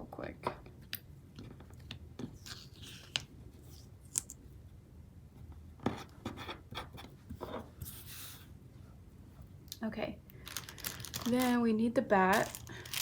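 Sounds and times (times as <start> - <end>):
paper rustling and scraping: 12.3 - 13.0.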